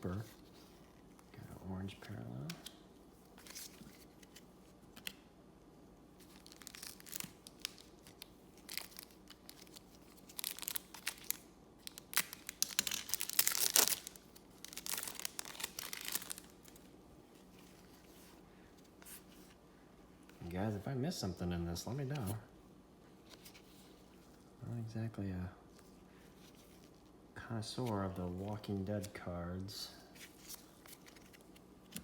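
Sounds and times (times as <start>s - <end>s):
wrapper tearing and crinkling: 6.2s - 16.8s.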